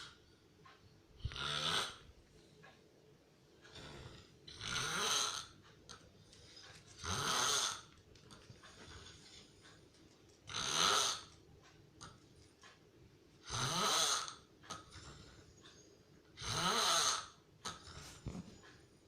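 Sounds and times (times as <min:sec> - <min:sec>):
heavy snoring: 0:01.2 - 0:02.1, 0:03.7 - 0:05.6, 0:07.0 - 0:07.9, 0:10.5 - 0:11.3, 0:13.4 - 0:14.5, 0:16.4 - 0:18.0.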